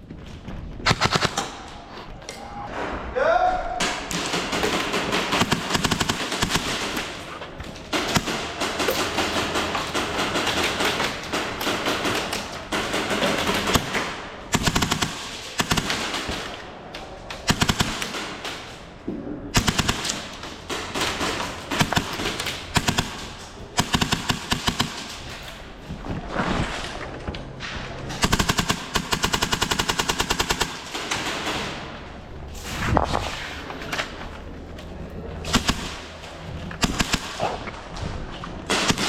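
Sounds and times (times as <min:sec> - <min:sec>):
airsoft guns firing bursts: 0:00.8 - 0:01.8, 0:03.8 - 0:16.6, 0:17.4 - 0:18.9, 0:19.5 - 0:25.5, 0:28.2 - 0:32.0, 0:35.4 - 0:37.6, 0:38.7 - 0:39.0.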